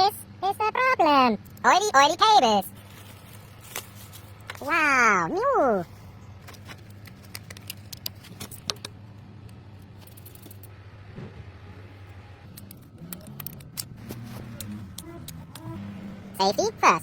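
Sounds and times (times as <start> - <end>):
tools clicking and rattling: 6.5 - 9.0, 9.7 - 10.7, 12.5 - 15.8.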